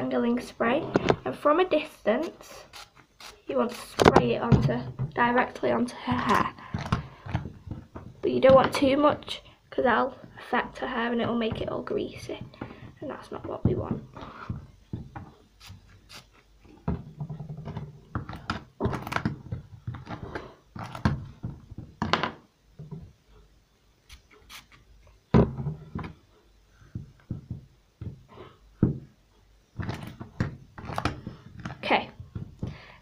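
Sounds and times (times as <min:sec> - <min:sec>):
knocks and thumps handling a doll: 0:00.6 - 0:01.3, 0:04.0 - 0:09.3, 0:10.9 - 0:15.9, 0:16.7 - 0:23.2, 0:25.3 - 0:29.2, 0:29.8 - 0:32.9
spray bottle hissing: 0:15.6 - 0:16.4, 0:24.1 - 0:24.8.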